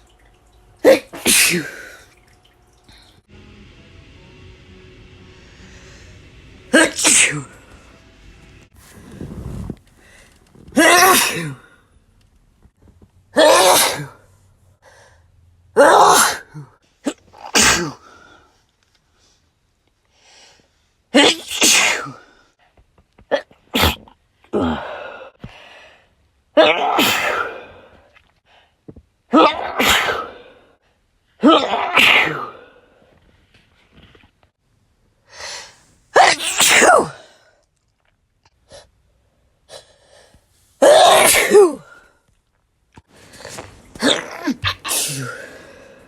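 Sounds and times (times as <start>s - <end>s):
person sneezing: 0.8s - 2.1s, 6.7s - 7.7s, 10.7s - 11.8s, 13.4s - 14.2s, 15.8s - 18.2s, 21.2s - 22.3s, 23.3s - 25.0s, 26.6s - 28.0s, 29.3s - 30.6s, 31.4s - 32.8s, 35.6s - 37.4s, 40.8s - 42.1s, 43.2s - 46.0s.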